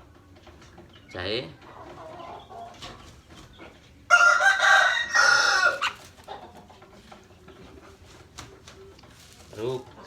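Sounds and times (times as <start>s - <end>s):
rooster crowing: 4.1s - 6.0s.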